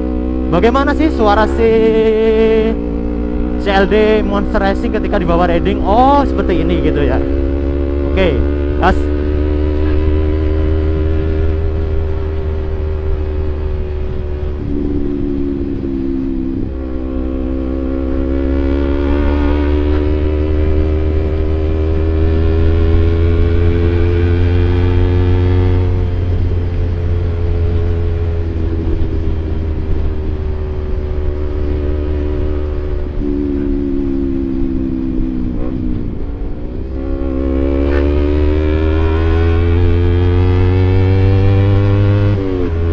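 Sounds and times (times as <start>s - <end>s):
motorcycle engine at low revs: 0.0s - 42.9s
wind rumble on microphone: 7.1s - 24.3s.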